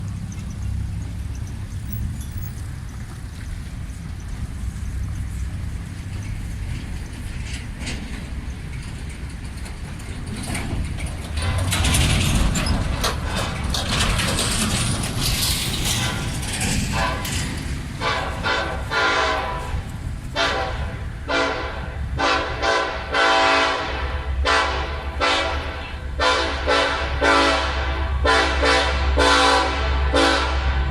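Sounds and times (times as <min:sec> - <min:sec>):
diesel locomotive rumble: 0:00.0 - 0:30.9
rail noise: 0:00.0 - 0:30.9
train air horn blasts: 0:11.4 - 0:11.9, 0:16.0 - 0:30.9.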